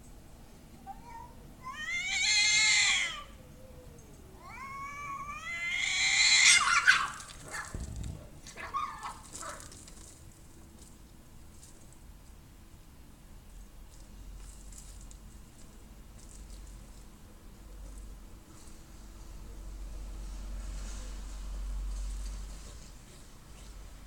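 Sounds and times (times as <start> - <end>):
cats yowling in a fight: 0.9 - 9.8.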